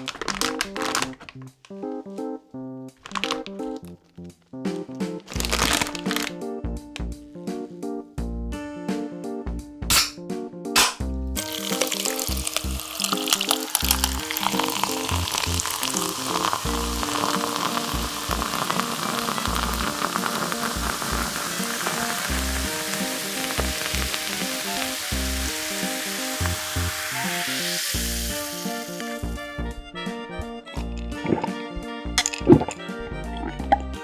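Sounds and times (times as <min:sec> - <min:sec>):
background music: 0:00.0 - 0:34.0
hot oil sizzling: 0:10.8 - 0:29.8.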